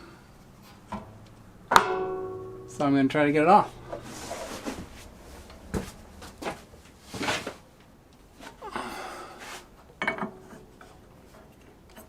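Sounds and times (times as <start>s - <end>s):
scraping and rattling: 0.6s - 7.7s.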